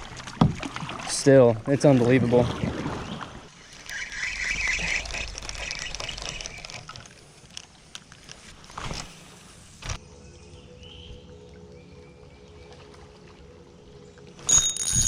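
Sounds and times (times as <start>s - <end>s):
water splashing around kayak: 0.0s - 10.0s.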